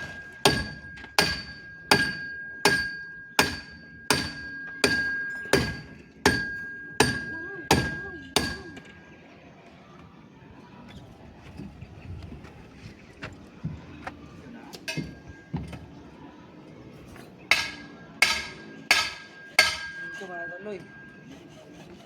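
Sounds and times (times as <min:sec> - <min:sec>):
hammer blows with metallic ring: 0:00.0 - 0:09.0, 0:17.5 - 0:22.0.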